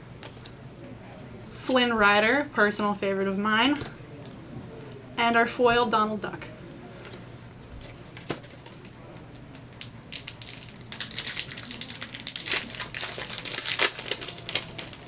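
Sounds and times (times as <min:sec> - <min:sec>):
foil wrapper crinkling: 0:08.2 - 0:15.0.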